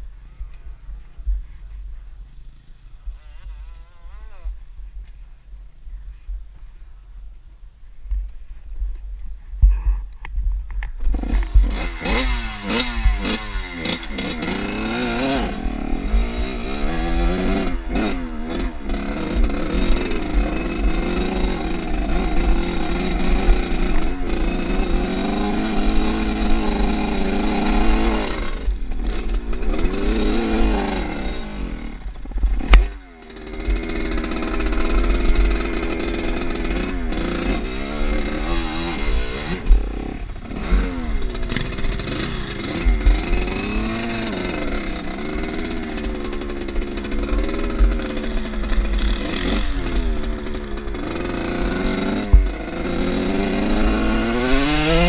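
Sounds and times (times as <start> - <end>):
motorcycle engine revving: 11.0 - 55.0.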